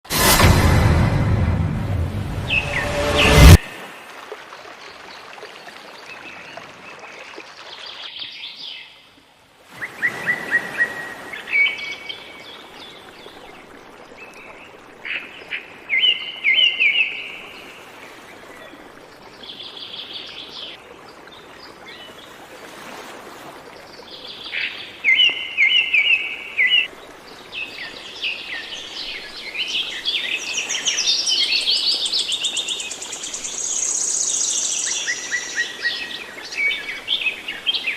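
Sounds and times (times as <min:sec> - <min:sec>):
songbirds singing and chirping: 0:27.6 - 0:37.9.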